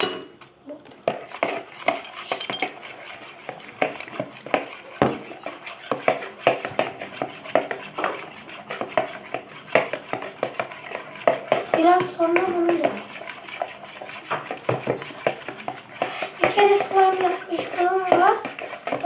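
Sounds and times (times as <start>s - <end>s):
spoon clinking and scraping bowl: 1.7s - 3.4s, 11.8s - 15.8s.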